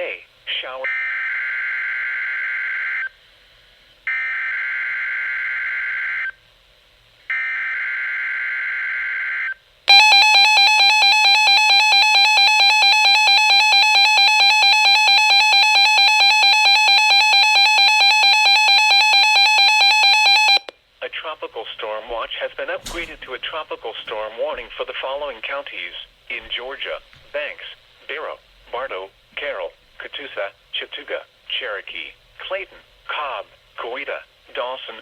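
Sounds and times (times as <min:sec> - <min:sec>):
pulsing alert siren: 0:09.9 - 0:20.7.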